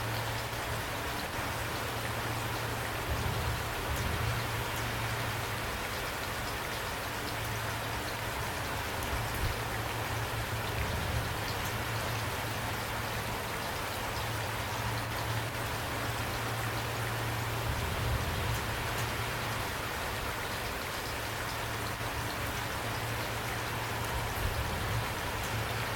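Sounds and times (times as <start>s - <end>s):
rain pattering: 0.0s - 25.9s.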